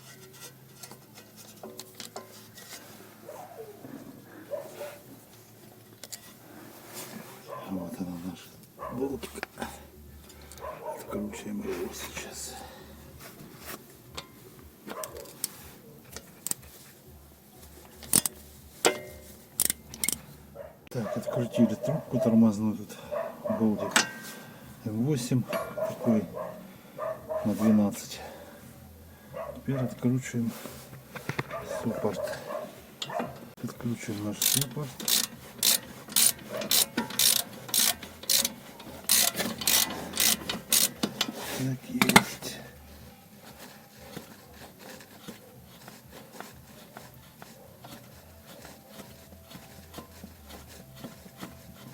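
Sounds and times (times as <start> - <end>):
wrench metallic clicks: 18.0 - 20.2, 34.4 - 41.3.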